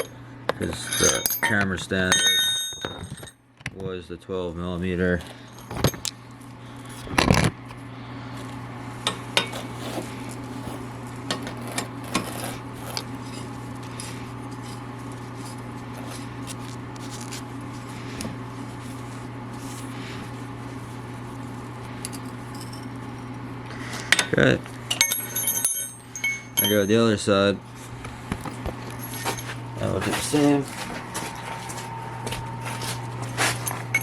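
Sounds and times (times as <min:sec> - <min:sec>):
low hum: 0:10.1 - 0:34.0.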